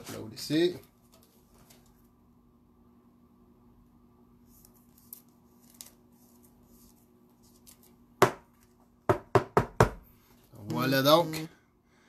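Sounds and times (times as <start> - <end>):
card rustling in plastic sleeve: 0.0 - 2.1, 4.4 - 8.8.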